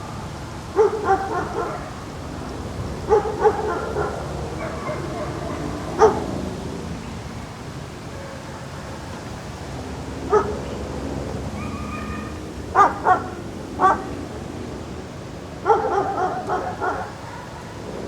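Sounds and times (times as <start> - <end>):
outdoor background noise: 0.0 - 18.0
dog barking: 0.7 - 2.0, 3.0 - 6.4, 10.2 - 10.7, 11.6 - 14.2, 15.6 - 18.0.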